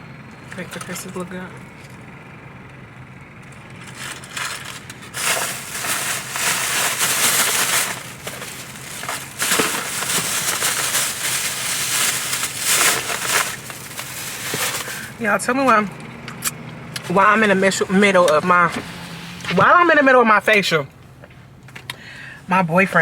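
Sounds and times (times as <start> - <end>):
packaging crinkling: 3.8 - 15.2.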